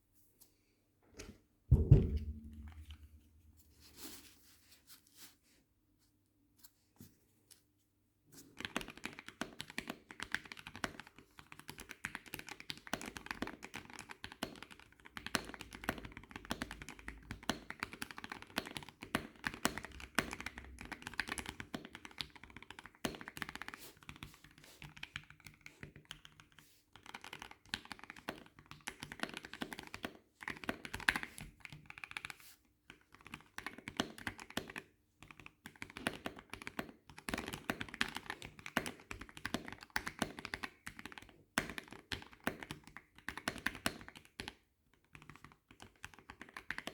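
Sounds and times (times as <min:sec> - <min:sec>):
mechanical keyboard typing: 0:08.6 - 0:23.7, 0:24.9 - 0:32.3, 0:33.1 - 0:44.5.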